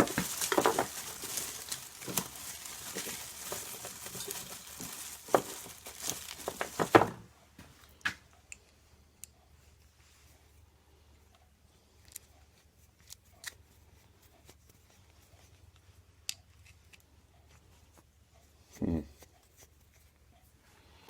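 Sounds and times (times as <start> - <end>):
hands rummaging small parts: 0.0 - 7.2.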